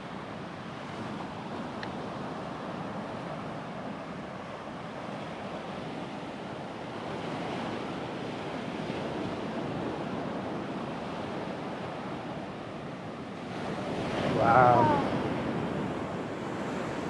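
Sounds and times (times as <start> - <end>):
ocean surf washing ashore: 0.0 - 17.0
wind on microphone: 13.5 - 17.0.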